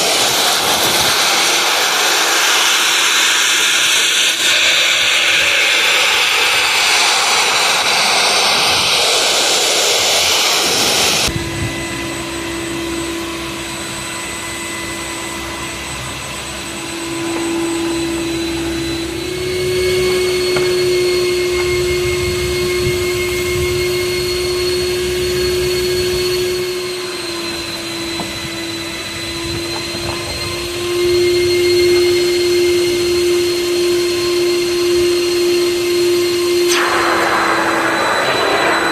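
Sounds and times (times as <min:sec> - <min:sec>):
loud rushing hiss: 0:00.0 - 0:11.6, 0:30.5 - 0:38.9
gutter vacuum motor whine: 0:00.0 - 0:38.9.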